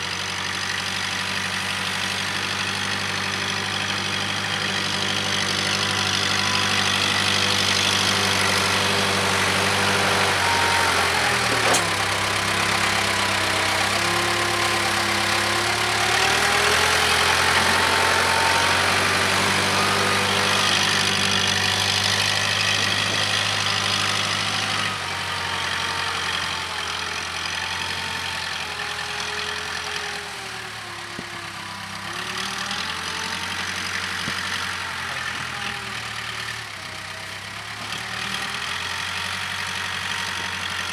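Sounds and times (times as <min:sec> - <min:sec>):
backhoe diesel engine running: 0:00.0 - 0:40.9.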